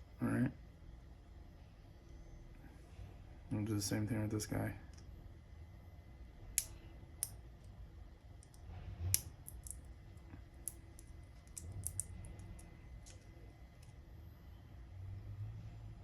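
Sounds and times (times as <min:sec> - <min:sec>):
plastic snapping: 0:10.6 - 0:13.2.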